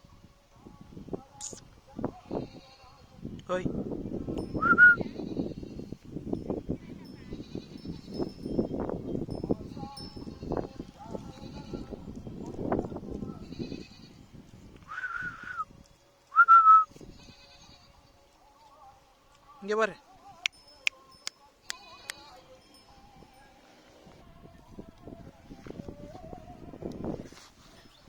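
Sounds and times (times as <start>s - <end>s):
goat bleating: 13.4s - 14.3s, 17.1s - 18.0s, 21.6s - 22.5s.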